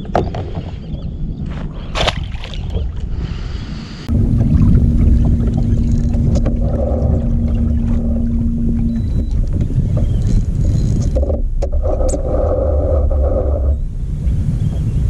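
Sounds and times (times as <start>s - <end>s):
wind rumble on microphone: 0.0s - 15.0s
steady low hum: 1.7s - 15.0s
gear knocking and rattling: 9.0s - 12.2s.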